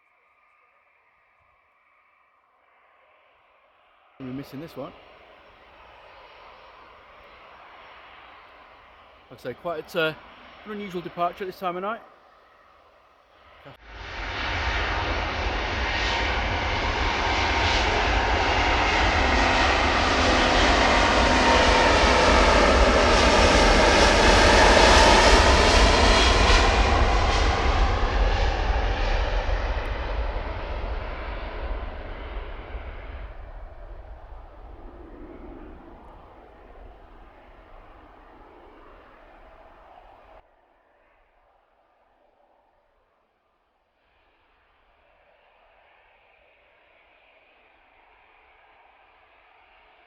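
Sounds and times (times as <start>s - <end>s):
jet engines roaring at takeoff: 4.2s - 12.6s, 13.7s - 40.4s.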